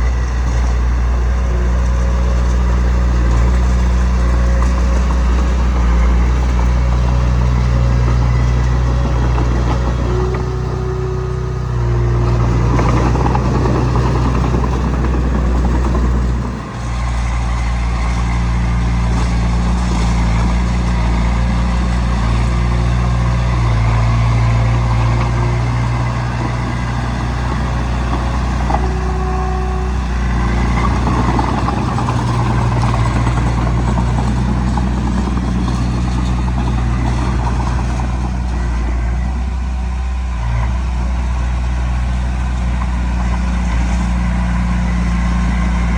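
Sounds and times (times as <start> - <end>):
bulldozer diesel engine running: 0.0 - 45.9
short squeaks: 4.5 - 14.2, 25.3 - 33.3.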